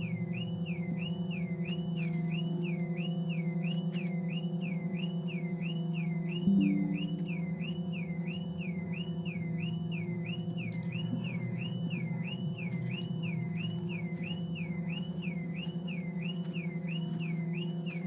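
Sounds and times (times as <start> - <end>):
low steady drone: 5.6 - 15.7
warbling high whistle-like tone: 6.4 - 8.4.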